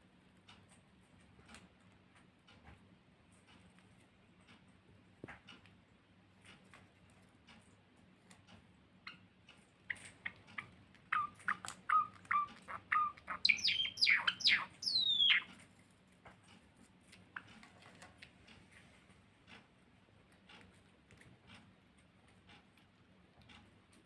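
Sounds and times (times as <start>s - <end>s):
faint light ticks: 0.1s - 24.0s
finches chirping: 9.0s - 15.5s.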